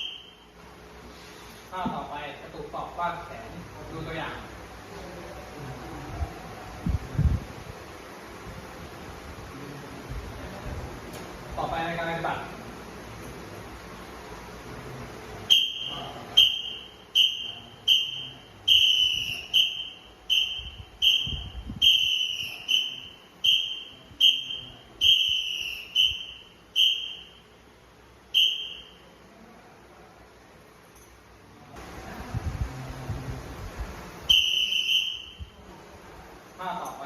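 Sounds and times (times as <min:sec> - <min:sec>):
whistle blasts: 0:00.0 - 0:00.5, 0:15.5 - 0:27.6, 0:28.3 - 0:29.0, 0:34.3 - 0:35.6.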